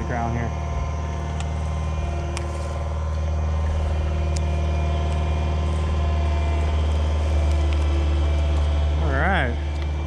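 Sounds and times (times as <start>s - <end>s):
diesel engine running: 0.0s - 10.0s.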